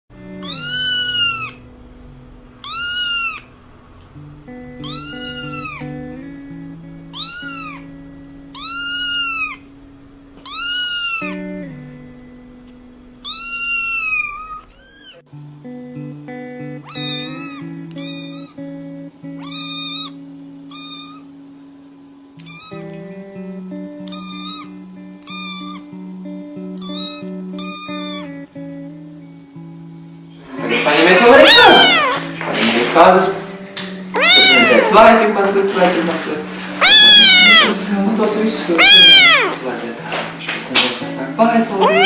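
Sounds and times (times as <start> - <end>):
background music with held chords: 0.1 - 13.4, 15.3 - 42.0
kitten meowing: 0.3 - 1.7, 2.6 - 3.6, 4.6 - 6.2, 7.0 - 9.7, 10.4 - 11.7, 13.2 - 15.2, 16.8 - 18.6, 19.4 - 21.3, 22.4 - 23.0, 24.0 - 25.9, 26.7 - 28.5, 30.8 - 32.4, 34.0 - 35.3, 36.6 - 39.6, 41.7 - 42.0.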